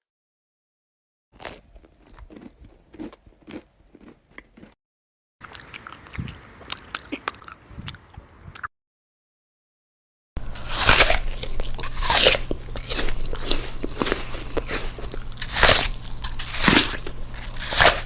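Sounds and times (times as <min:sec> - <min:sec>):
person chewing crunchy food: 0:01.4 - 0:04.8, 0:05.4 - 0:08.7, 0:10.4 - 0:18.0.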